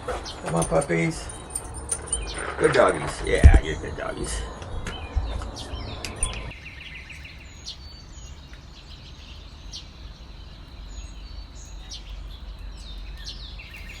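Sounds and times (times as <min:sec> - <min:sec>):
bird trill: 0:00.0 - 0:14.0
songbirds chirping: 0:00.0 - 0:14.0
low rumble: 0:00.4 - 0:06.6.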